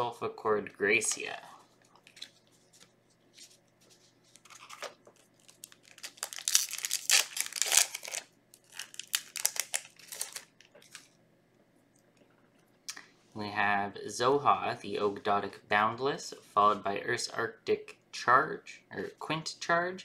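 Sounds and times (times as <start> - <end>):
foil wrapper tearing and crinkling: 4.4 - 11.2.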